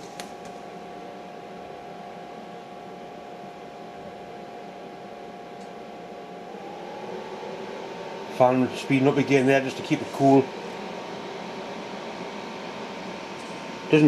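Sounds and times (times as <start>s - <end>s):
blower fan whine: 0.0s - 14.0s
rush of air: 6.3s - 13.9s.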